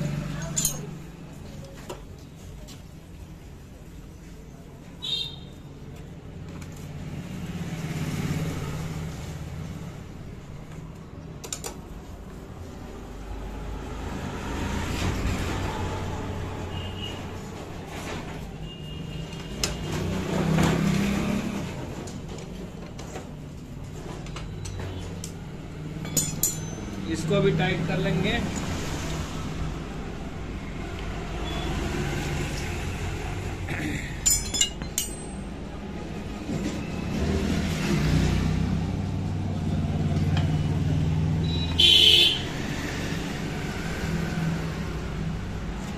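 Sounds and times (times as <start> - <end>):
sharp metallic clinks: 0.4 - 1.0, 26.0 - 27.0, 34.2 - 35.6.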